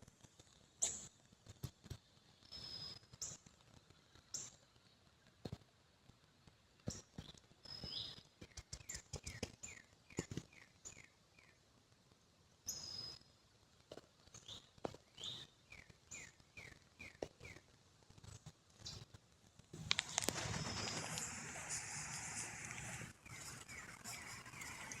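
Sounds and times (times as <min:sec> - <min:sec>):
faint clicks and taps: 0:05.2 - 0:10.7, 0:13.8 - 0:15.2, 0:15.8 - 0:25.0
songbird singing: 0:07.6 - 0:11.6, 0:12.7 - 0:13.3, 0:14.4 - 0:17.6, 0:19.8 - 0:25.0.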